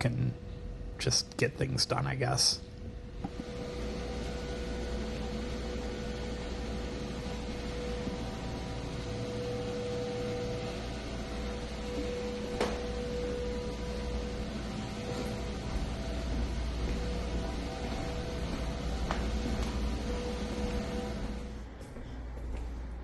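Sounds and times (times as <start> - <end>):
steady hum: 0.0 - 23.0
high tone: 3.3 - 21.6.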